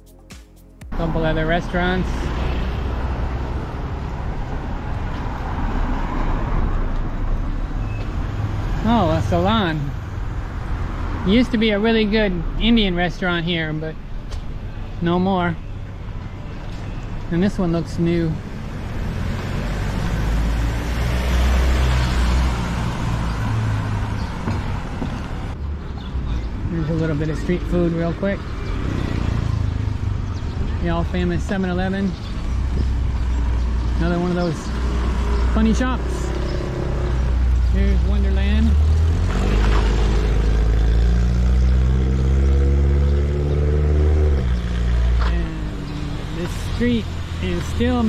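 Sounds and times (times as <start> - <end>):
motor vehicle passing by: 18.6 - 26.0, 26.9 - 48.0.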